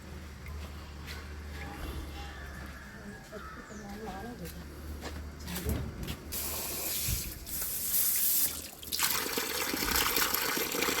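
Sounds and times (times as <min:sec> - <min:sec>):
water running from a tap: 0:06.4 - 0:11.0.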